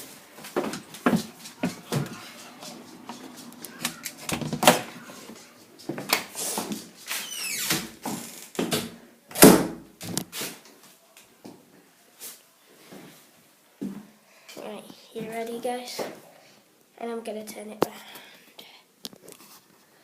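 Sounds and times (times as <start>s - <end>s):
high falling squeak: 7.1s - 7.7s.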